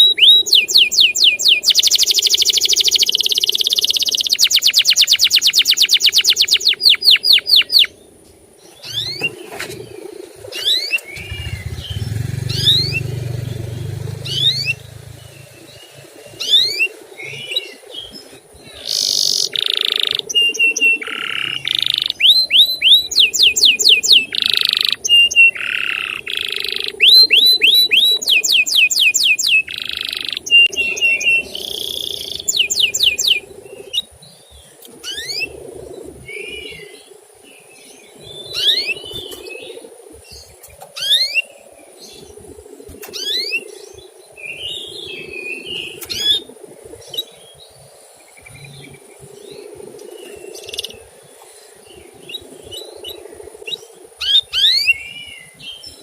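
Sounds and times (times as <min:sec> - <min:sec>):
canary singing: 0:00.0 - 0:08.1, 0:08.7 - 0:09.8, 0:10.5 - 0:34.3, 0:35.0 - 0:35.6.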